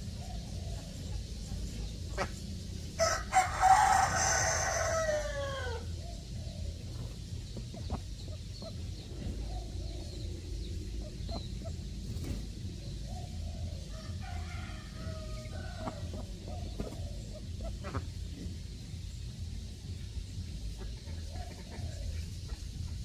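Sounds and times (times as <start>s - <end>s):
rooster crowing: 3.0s - 5.9s, 13.8s - 16.3s.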